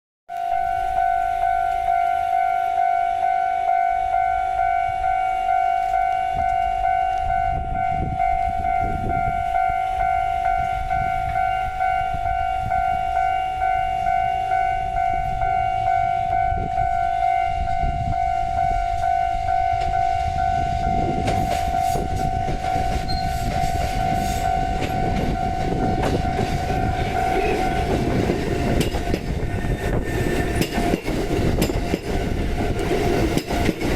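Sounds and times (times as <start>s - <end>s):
electric train rumbling: 0.3s - 33.9s
level crossing alarm ringing: 0.3s - 33.9s
wheels clicking over rail joints: 30.4s - 33.9s.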